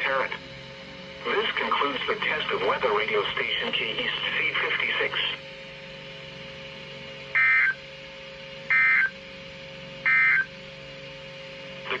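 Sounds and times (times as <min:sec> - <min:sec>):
faint steady hum: 0:00.0 - 0:12.0
buzzy two-tone data bursts: 0:07.4 - 0:07.8, 0:08.7 - 0:09.1, 0:10.1 - 0:10.5.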